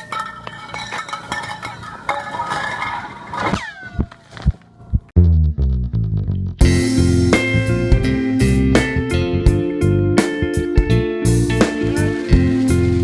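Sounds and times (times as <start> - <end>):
ice clinking and ringing: 0.0 - 2.3
music with bass line: 5.2 - 13.0.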